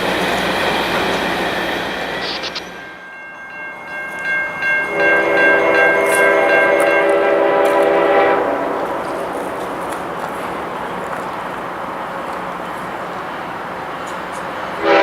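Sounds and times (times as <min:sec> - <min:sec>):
passing train rumble: 0:00.0 - 0:15.0
locomotive air horn: 0:04.8 - 0:09.4, 0:14.8 - 0:15.0.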